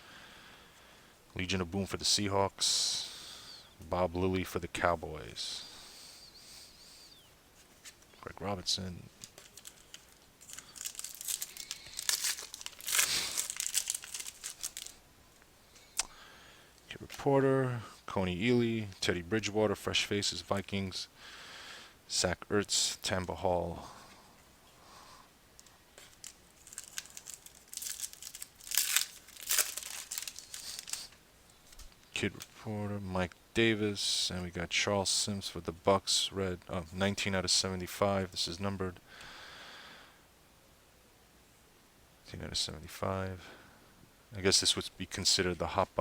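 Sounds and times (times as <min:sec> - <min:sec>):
foil wrapper crinkling: 0:09.2 - 0:15.0, 0:25.6 - 0:32.6.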